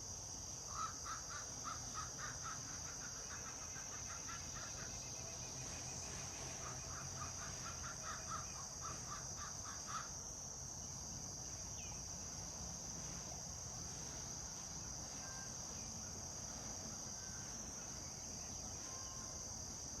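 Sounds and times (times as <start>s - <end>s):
crow cawing: 0.7s - 3.5s, 6.9s - 10.1s
high-pitched insect drone: 11.6s - 20.0s.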